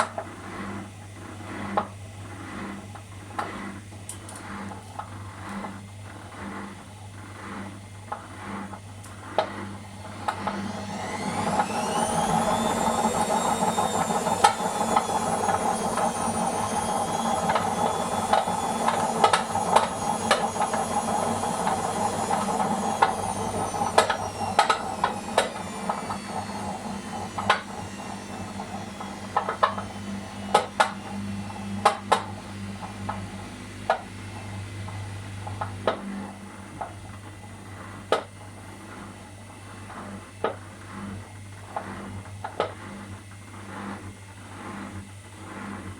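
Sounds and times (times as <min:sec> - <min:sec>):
high whine falling in pitch: 0:11.0 - 0:36.0.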